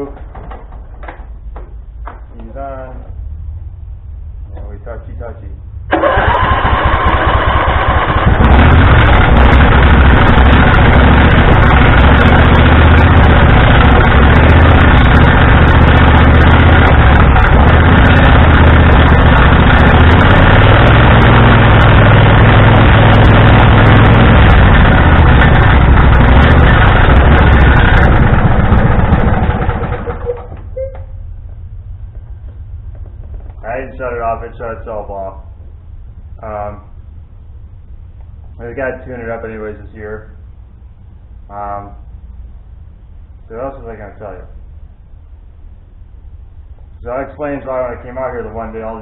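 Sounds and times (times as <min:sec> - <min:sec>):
man talking: 0:02.3 - 0:03.1, 0:04.5 - 0:05.6, 0:33.6 - 0:35.5, 0:36.4 - 0:36.9, 0:38.6 - 0:40.3, 0:41.5 - 0:42.0, 0:43.5 - 0:44.6, 0:47.0 - 0:49.0
riding tractor engine running: 0:05.9 - 0:33.6.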